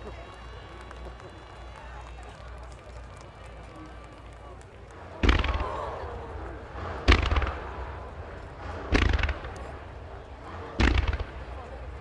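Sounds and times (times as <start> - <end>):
rumbling crackling echo: 3.9 - 12.0
firework shells bursting: 5.0 - 12.0.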